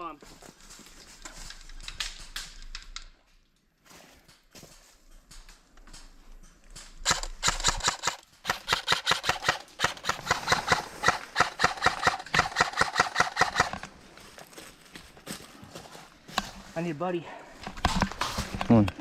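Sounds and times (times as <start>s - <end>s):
airsoft gun rapid shots: 7.0s - 13.8s.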